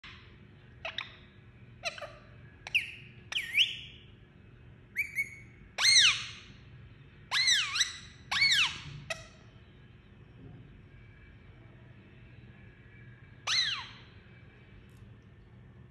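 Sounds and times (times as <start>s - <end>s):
parakeet whistled calls: 0.0s - 4.1s, 4.9s - 6.6s, 7.3s - 9.6s, 13.4s - 14.2s.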